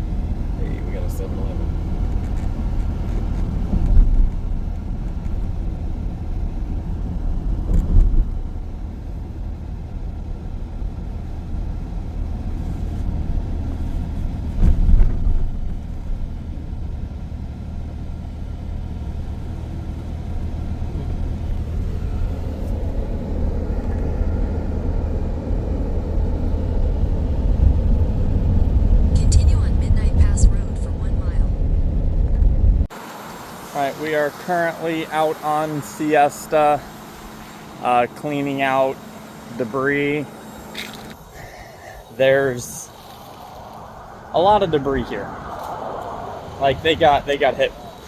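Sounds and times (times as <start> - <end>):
van road and engine rumble: 0.0 - 48.0
vehicle bumps: 2.0 - 5.8, 7.5 - 8.8, 13.8 - 16.3.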